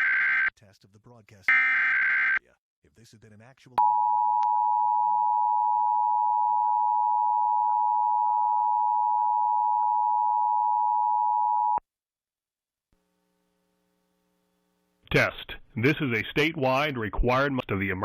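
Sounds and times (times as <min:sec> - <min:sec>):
two-tone alarm: 0:01.5 - 0:02.4.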